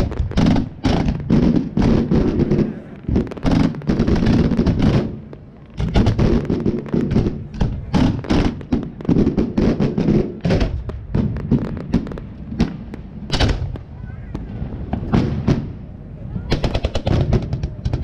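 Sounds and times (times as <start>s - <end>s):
fireworks bangs: 0.0s - 18.0s.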